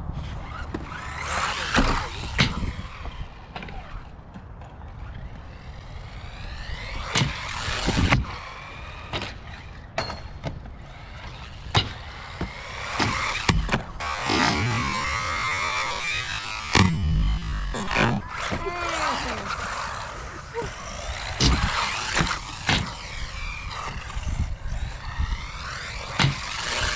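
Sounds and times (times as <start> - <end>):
low wind rumble: 0.0 - 26.9
electric motor whining: 0.2 - 26.9
toy car landing on concrete: 11.5 - 18.6, 19.2 - 24.1.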